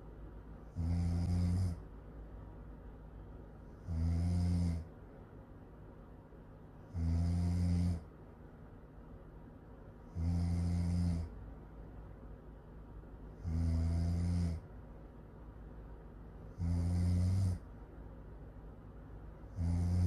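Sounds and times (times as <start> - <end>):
loud low snoring: 0.7 - 1.8, 3.8 - 4.9, 6.8 - 8.1, 10.1 - 11.4, 13.4 - 14.7, 16.5 - 17.7, 19.4 - 20.0.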